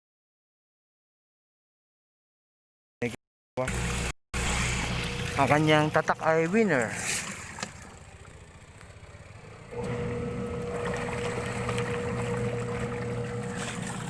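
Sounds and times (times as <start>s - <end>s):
washing machine motor humming: 3.6s - 14.0s.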